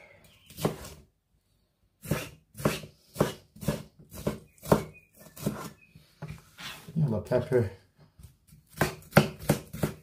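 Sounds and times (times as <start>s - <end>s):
knife cutting vegetables on board: 0.5s - 1.0s, 2.0s - 6.9s, 8.2s - 10.0s.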